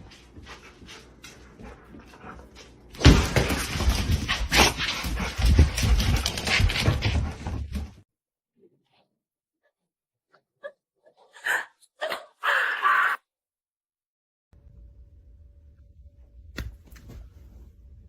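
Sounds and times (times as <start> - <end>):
loud noisy dog sounds: 10.7 - 13.2.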